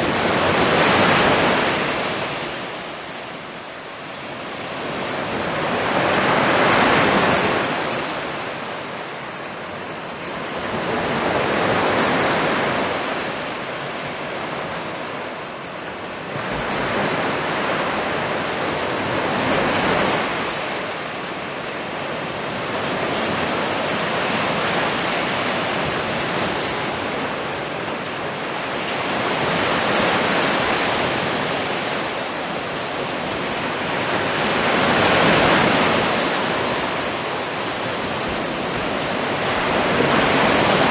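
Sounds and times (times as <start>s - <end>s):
surf breaking on shore: 16.2s - 40.9s.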